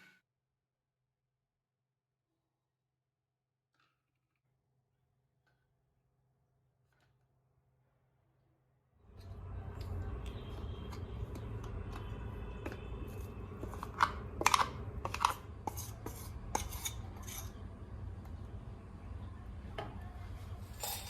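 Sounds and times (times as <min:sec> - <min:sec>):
objects clicking scraping and knocking: 0:13.6 - 0:17.6.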